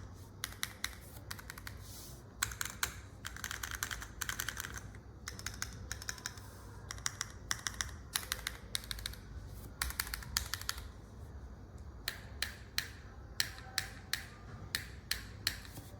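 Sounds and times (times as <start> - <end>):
mechanical keyboard typing: 0.4 - 1.8, 2.4 - 10.9.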